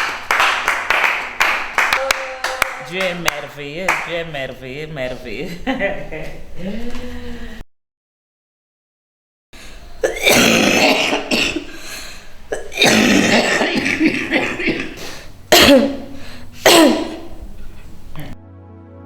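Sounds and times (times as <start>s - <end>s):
person coughing hard: 10.0s - 17.4s.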